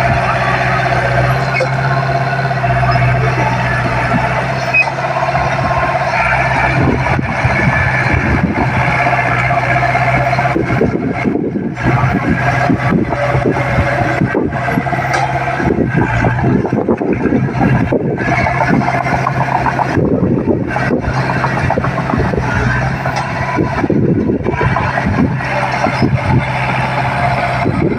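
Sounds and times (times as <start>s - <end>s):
diesel engine running under load: 0.0s - 27.9s
clanking and rattling: 0.1s - 27.9s.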